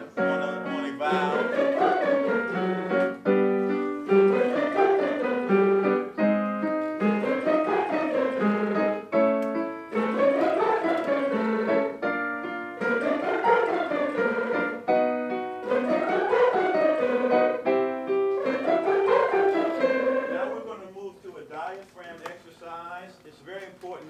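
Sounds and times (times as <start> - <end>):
piano notes: 0.0 - 20.8
choir singing lip trills: 0.0 - 20.9.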